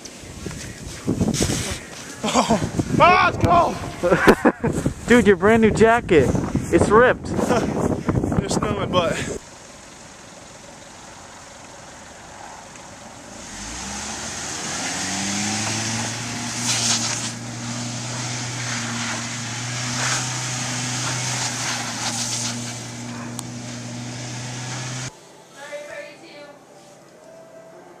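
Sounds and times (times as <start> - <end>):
louder rustles: 15.6 - 25.1
hiss: 16.0 - 23.0.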